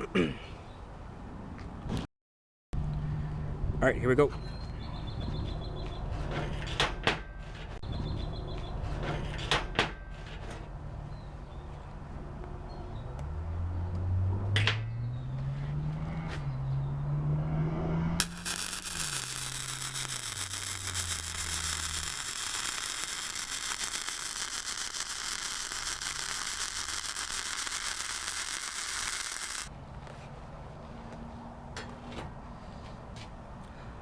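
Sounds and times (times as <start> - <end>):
welding arc crackling sizzle: 18.2 - 29.7.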